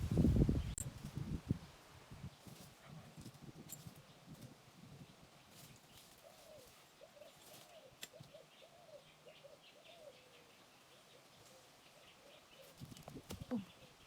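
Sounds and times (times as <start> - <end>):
faint bird calls: 5.9 - 14.0.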